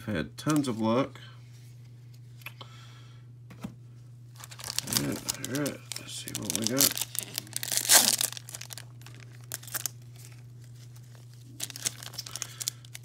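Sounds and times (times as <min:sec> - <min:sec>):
wrapper crinkling: 0:04.3 - 0:13.0
wrapper ripping open: 0:04.4 - 0:13.0.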